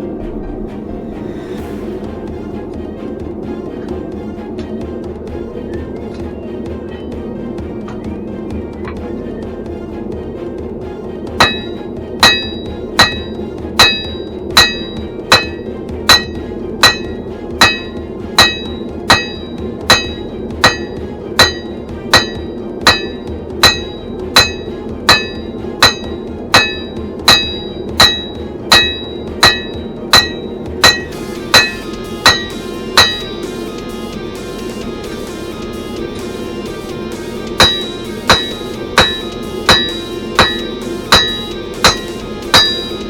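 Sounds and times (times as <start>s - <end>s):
hammer striking steel on anvil: 11.4s - 33.9s, 36.7s - 43.0s.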